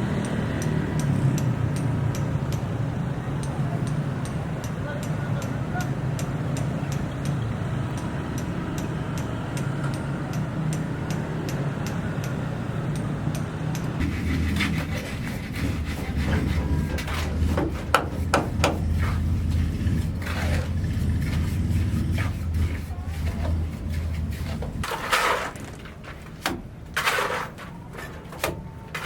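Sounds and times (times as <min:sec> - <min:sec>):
low hum with ticking: 0:00.2 - 0:14.0
knocks and scrapes: 0:13.9 - 0:29.0
deep rumble: 0:14.0 - 0:24.9.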